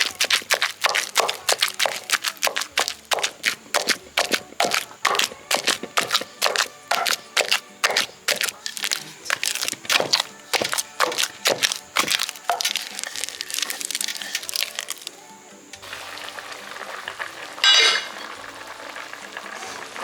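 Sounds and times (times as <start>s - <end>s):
leaves being torn and crushed: 0.0s - 15.2s.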